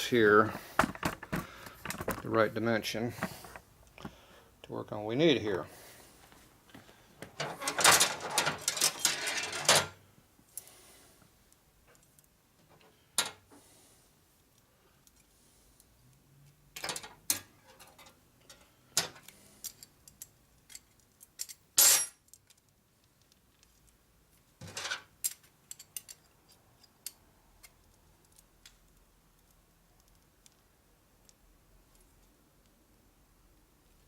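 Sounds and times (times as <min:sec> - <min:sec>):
metal parts and tools clinking: 0:07.4 - 0:10.0, 0:16.8 - 0:22.7, 0:24.6 - 0:28.4.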